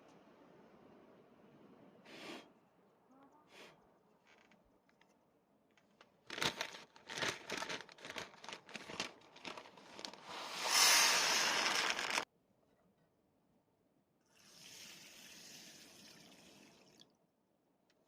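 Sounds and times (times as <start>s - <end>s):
crinkling and rustling: 4.1s - 12.3s
steady hiss: 10.3s - 12.2s.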